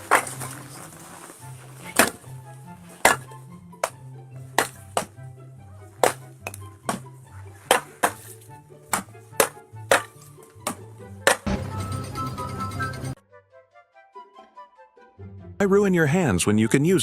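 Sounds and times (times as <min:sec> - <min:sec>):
background music with bass line: 0:00.0 - 0:13.2.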